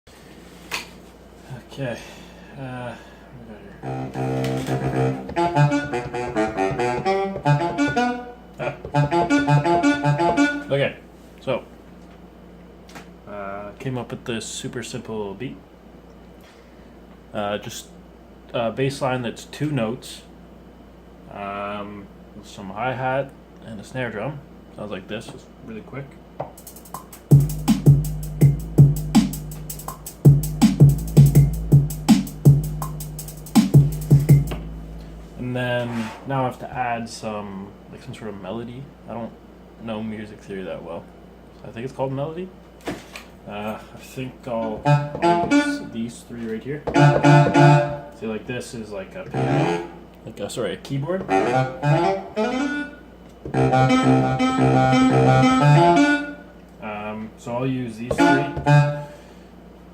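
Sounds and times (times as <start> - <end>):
low bass notes: 3.8 - 10.6, 26.6 - 35.6, 47.0 - 48.0, 53.5 - 56.2
saxophone-like sampled melody: 3.8 - 10.8, 26.8 - 35.4, 44.8 - 46.0, 46.9 - 48.2, 49.3 - 50.0, 51.2 - 56.5, 58.1 - 59.2
drum hits: 26.6 - 35.3.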